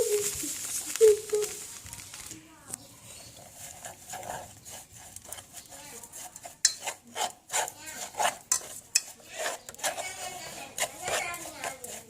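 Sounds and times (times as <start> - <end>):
utensil scraping cooking pot: 3.0 - 12.0.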